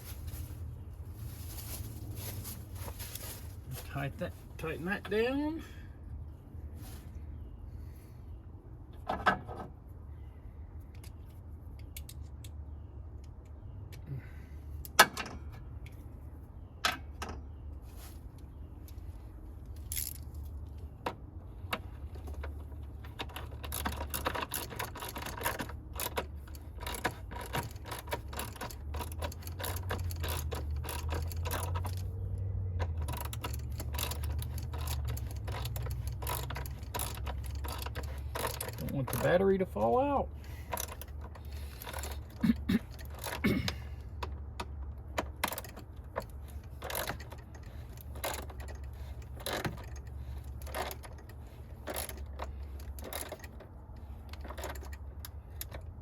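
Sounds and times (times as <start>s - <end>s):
socket ratchet clicking: 32.8s - 39.2s
metal tools clinking: 32.8s - 43.9s.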